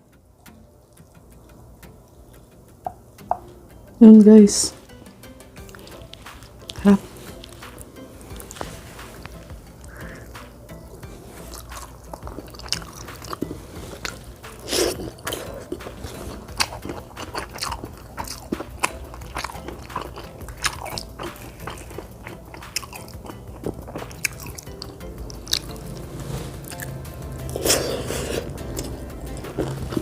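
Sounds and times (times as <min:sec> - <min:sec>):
chewing with wet mouth smacks: 0:11.1 - 0:30.0.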